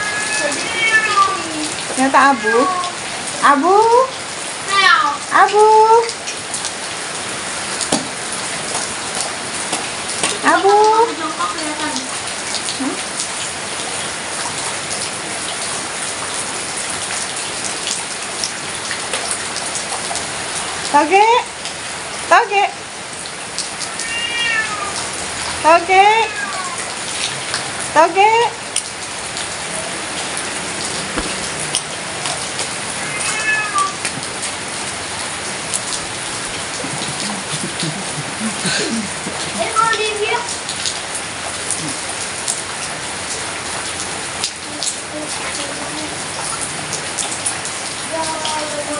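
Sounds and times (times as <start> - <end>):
cat meowing: 0.0 - 3.0, 23.8 - 27.0, 32.8 - 34.2
heavy rain falling: 0.0 - 48.9.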